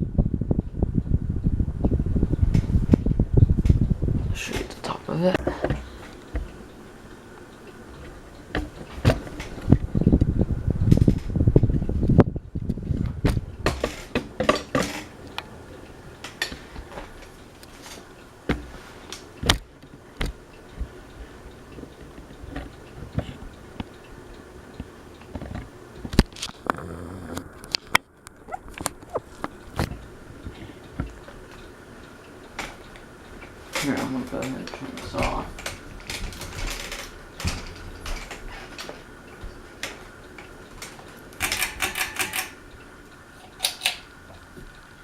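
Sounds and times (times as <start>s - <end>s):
ceiling fan humming: 0.0s - 45.0s
irregular clicks and knocks: 4.5s - 6.8s, 8.0s - 10.2s, 12.6s - 15.5s, 16.2s - 24.1s, 32.5s - 42.6s.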